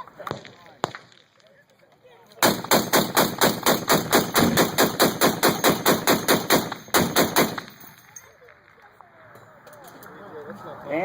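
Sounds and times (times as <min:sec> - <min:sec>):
machine gun automatic burst: 0:02.4 - 0:07.9.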